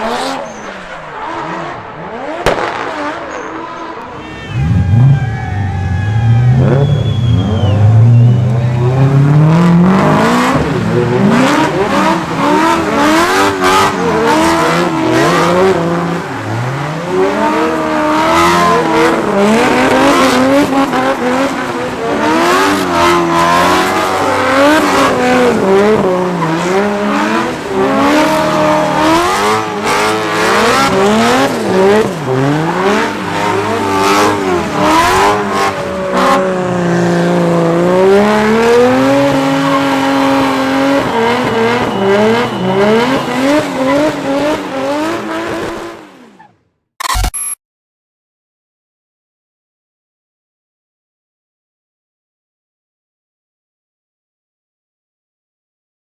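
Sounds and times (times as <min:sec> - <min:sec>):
car engine revving: 0:00.0 - 0:46.6
tyres squealing: 0:03.4 - 0:09.2, 0:10.6 - 0:45.4.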